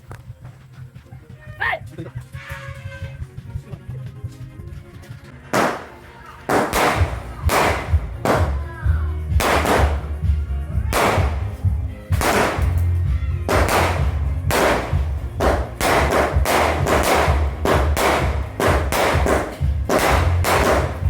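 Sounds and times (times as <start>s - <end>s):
firework bangs with crackling: 5.6s - 21.0s.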